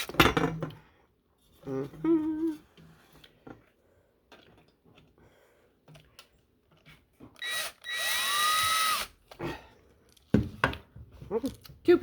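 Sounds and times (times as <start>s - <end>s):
power drill whining: 7.4s - 9.2s.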